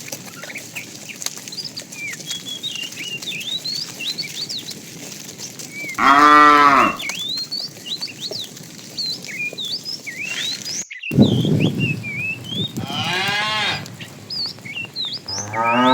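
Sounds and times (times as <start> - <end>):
cow mooing: 6.0 - 7.0, 12.8 - 15.9
high chirping: 10.2 - 15.9.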